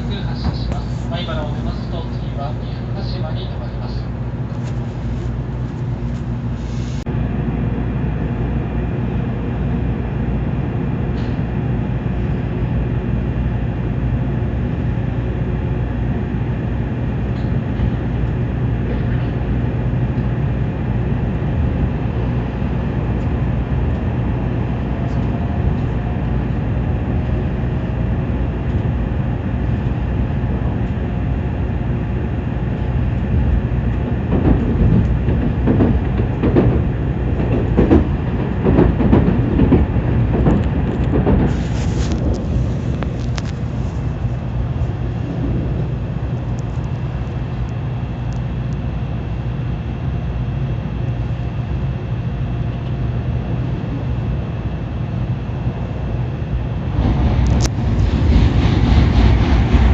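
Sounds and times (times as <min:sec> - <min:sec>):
faint whine: 0:00.0 - 0:07.8
train wheels rumbling: 0:00.0 - 0:48.0, 0:55.6 - 0:59.9.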